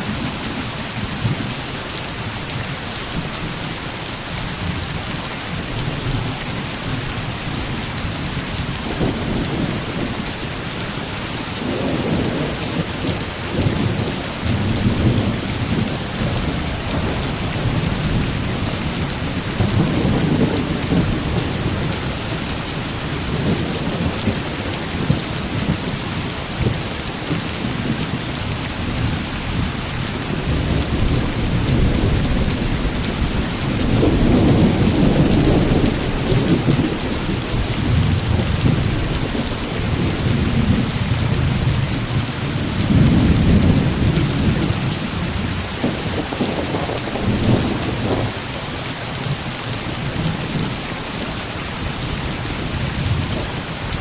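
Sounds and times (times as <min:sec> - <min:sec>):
heavy rain falling: 0:00.0 - 0:54.0
rolling thunder: 0:30.2 - 0:48.4.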